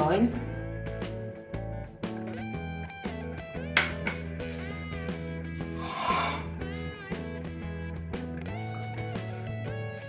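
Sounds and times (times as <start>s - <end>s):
steady bass: 0.0s - 10.0s
plucked guitar notes: 3.4s - 5.0s.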